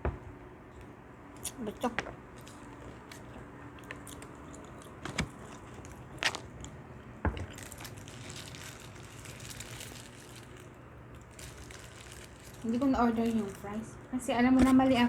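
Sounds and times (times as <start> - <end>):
crackly rustling: 0.7 - 15.0
person chewing food: 0.8 - 12.6.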